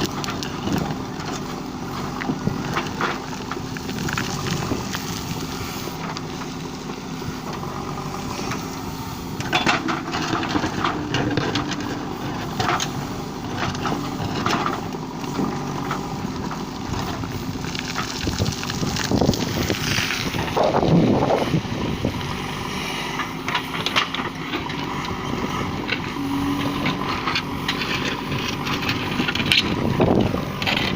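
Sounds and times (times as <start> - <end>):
diesel engine running: 0.0 - 30.9.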